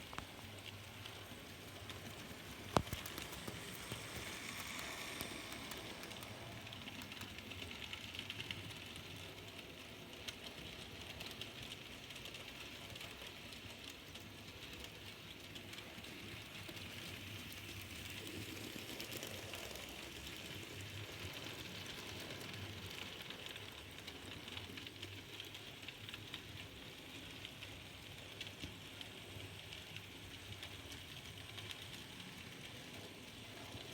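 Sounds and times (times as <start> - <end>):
wheels ticking on rails: 0.0 - 33.9
small motor hum: 1.2 - 7.8.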